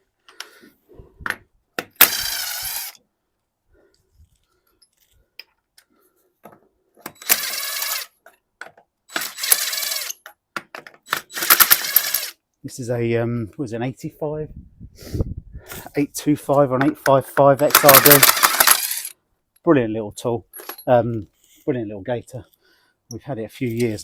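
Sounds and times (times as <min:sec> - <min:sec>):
cordless impact driver bursts: 0:02.0 - 0:03.0, 0:07.2 - 0:08.1, 0:09.1 - 0:10.2, 0:11.1 - 0:12.4, 0:17.8 - 0:19.1
metallic clinks of loose nuts: 0:17.6 - 0:19.1.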